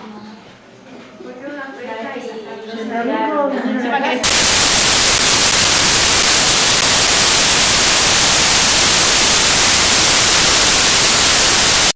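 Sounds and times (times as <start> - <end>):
loud static hiss: 4.2 - 11.9.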